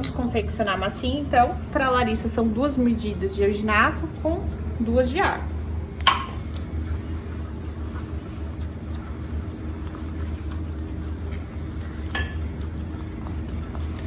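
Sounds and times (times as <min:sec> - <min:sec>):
wet paste scraping and stirring: 0:05.5 - 0:14.0.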